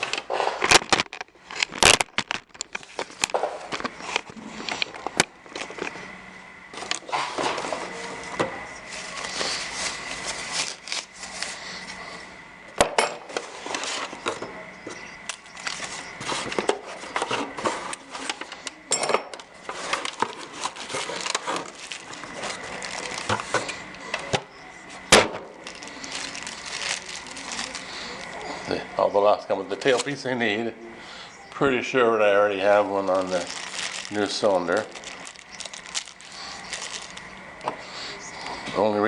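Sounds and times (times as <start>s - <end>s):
packaging rustling: 0.0s - 6.0s, 6.8s - 12.0s, 13.3s - 18.8s, 19.4s - 28.7s, 32.4s - 37.4s.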